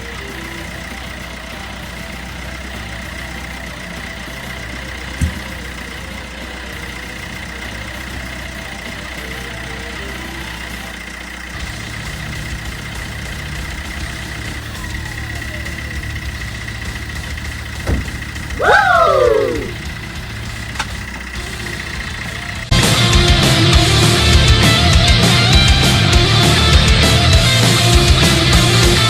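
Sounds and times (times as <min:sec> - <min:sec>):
car engine idling: 0:00.0 - 0:29.0.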